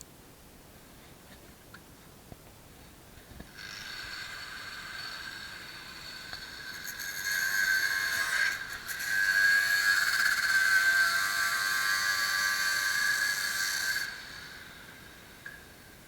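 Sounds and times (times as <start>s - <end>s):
angle grinder whining: 3.5s - 15.9s.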